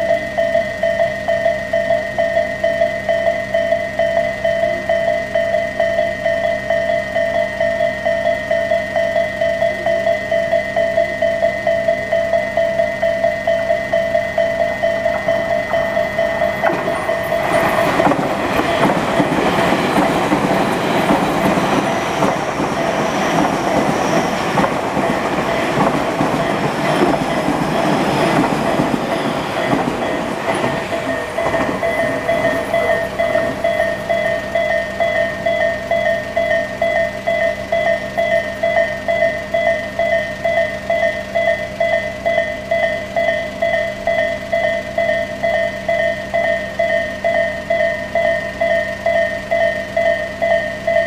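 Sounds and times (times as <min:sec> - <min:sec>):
level crossing bell ringing: 0:00.0 - 0:51.0
train wheels clattering over rails: 0:14.4 - 0:35.6.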